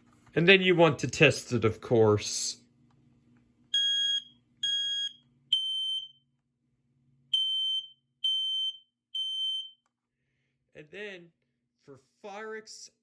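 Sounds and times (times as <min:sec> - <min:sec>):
smoke alarm beeps: 0:03.7 - 0:06.2, 0:07.3 - 0:09.8.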